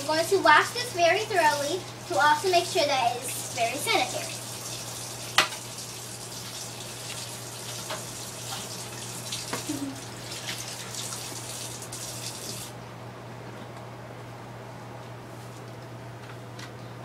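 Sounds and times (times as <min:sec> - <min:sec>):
tap water running: 0:00.0 - 0:12.8.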